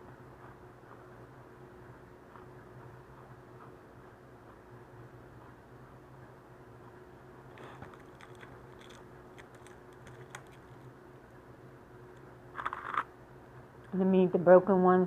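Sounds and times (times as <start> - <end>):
cookies crinkling and breaking: 7.6 - 10.8.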